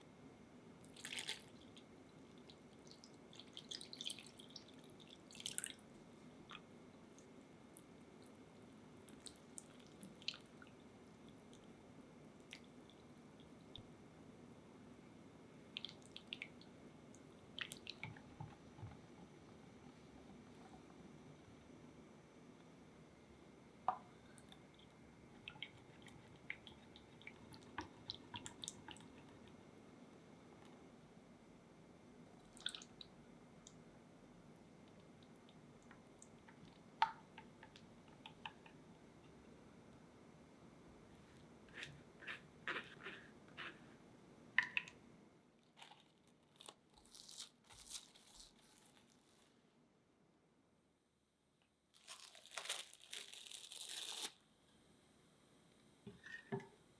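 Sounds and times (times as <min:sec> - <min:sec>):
crinkly rustles: 0:45.8 - 0:49.6, 0:51.9 - 0:54.4.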